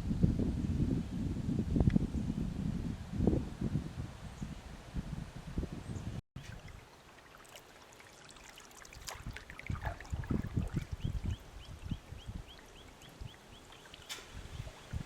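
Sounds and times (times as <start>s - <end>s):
river water trickling: 6.4s - 15.0s.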